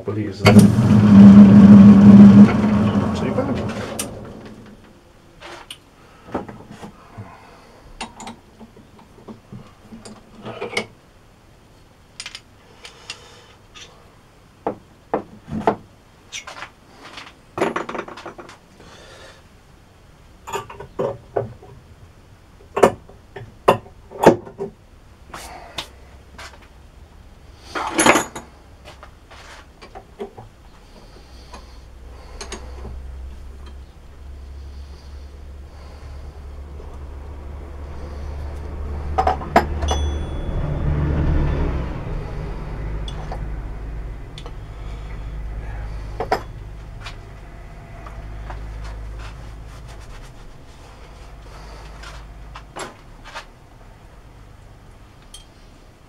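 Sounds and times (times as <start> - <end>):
motor humming low: 0.4 - 5.1.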